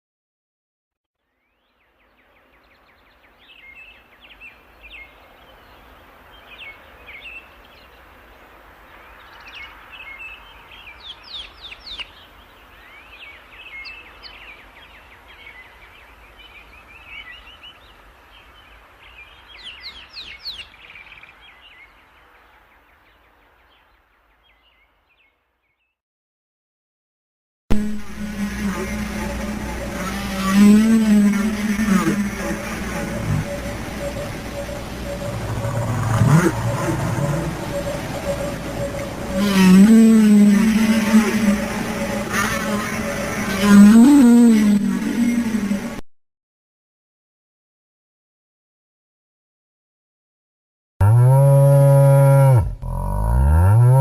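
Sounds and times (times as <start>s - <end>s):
birds chirping and trilling: 1.2s - 25.9s, 27.8s - 46.0s
background hiss: 28.0s - 46.0s
fast rising whistled sweeps: 28.4s - 44.2s.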